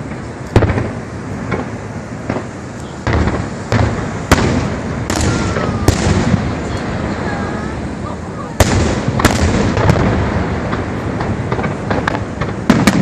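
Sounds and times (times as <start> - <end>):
firework bursts: 0.0 - 13.0
falling firework whistle: 2.3 - 10.0.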